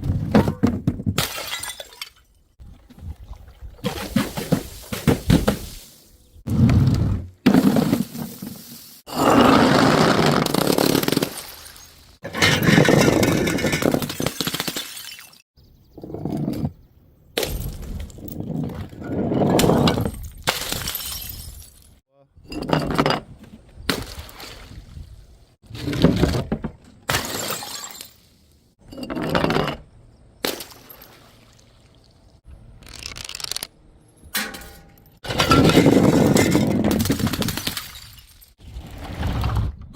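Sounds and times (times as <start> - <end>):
glass bottles smashing: 1.2 - 2.4, 10.6 - 15.4, 19.7 - 22.0, 27.1 - 28.2, 34.4 - 38.6.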